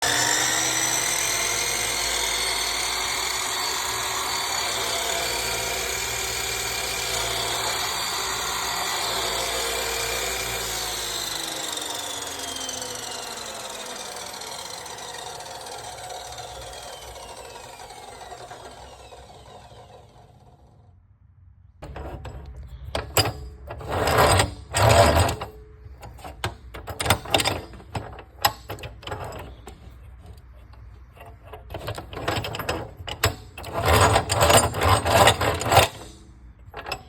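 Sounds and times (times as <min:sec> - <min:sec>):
chop saw motor whining: 0:00.0 - 0:20.9, 0:23.9 - 0:25.5, 0:33.2 - 0:36.2.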